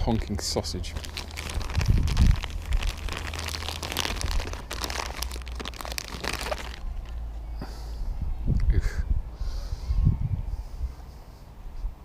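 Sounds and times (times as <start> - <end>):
plastic bag crinkling: 0.8 - 7.2.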